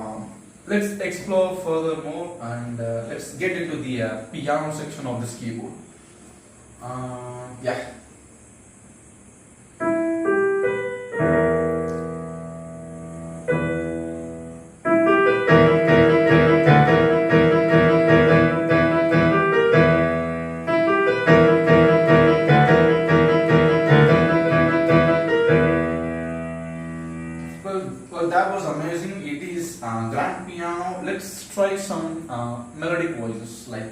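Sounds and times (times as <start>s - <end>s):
electronic keyboard piano chords: 9.7s - 29.2s.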